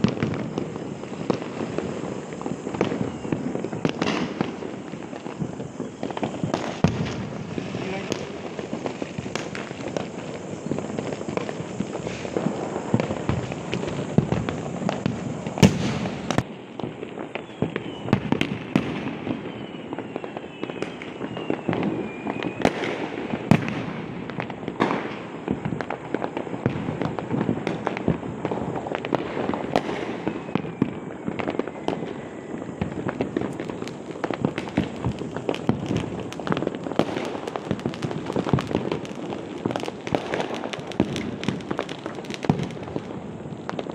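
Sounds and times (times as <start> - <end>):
falling rocket whistles: 0.0 - 43.9
firecrackers crackling: 0.0 - 43.9.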